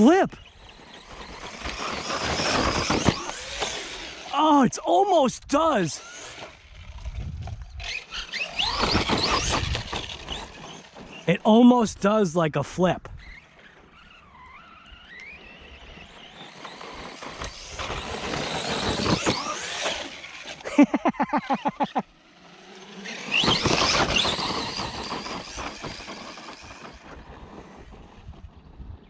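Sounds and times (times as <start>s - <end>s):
electric motor whining: 0.0s - 4.6s, 6.0s - 11.3s, 13.1s - 28.4s
rapid pulsing: 15.3s - 20.6s, 22.3s - 28.4s.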